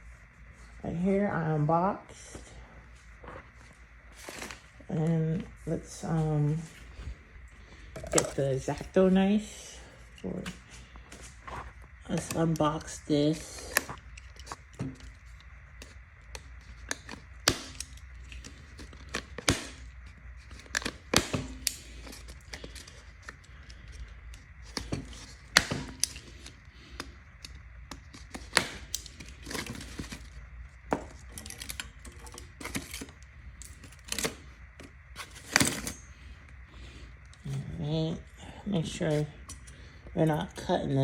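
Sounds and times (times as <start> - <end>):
packaging rustling and tearing: 10.3 - 30.4, 31.1 - 36.1.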